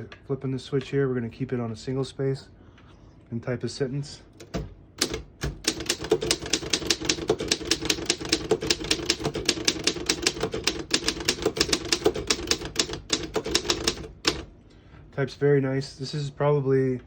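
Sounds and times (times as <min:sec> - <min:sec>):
manual typewriter typing: 0:04.4 - 0:14.5.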